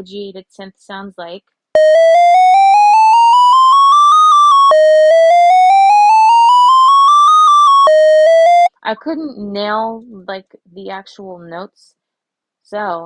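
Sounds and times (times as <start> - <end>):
synthesizer arpeggio climbing: 1.8 - 8.7.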